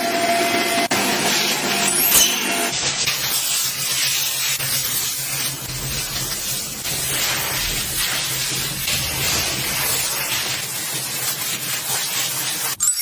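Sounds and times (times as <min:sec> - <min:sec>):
spot cleaner hissing: 0:00.1 - 0:12.8
low motor hum: 0:05.6 - 0:10.7.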